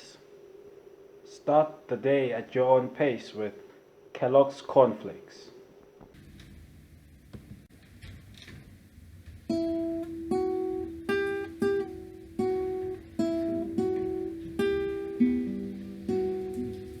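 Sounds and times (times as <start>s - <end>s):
plucked acoustic guitar notes: 9.4s - 17.0s.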